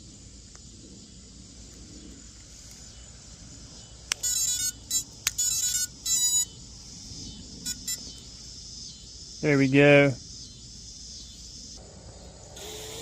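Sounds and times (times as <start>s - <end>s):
insects chirring: 0.0s - 13.0s
electronic beep tones: 4.2s - 6.6s.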